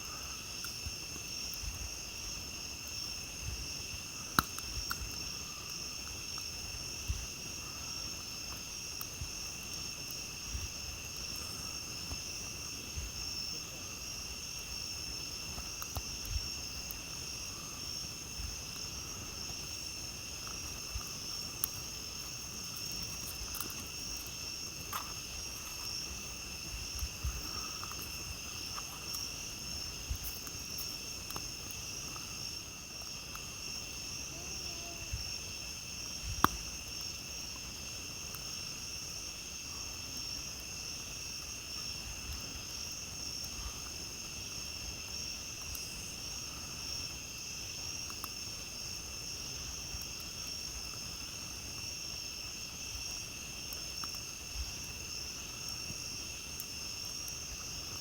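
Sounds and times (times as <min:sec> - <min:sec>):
campfire crackling: 0:00.0 - 0:58.0
crickets chirping: 0:00.0 - 0:58.0.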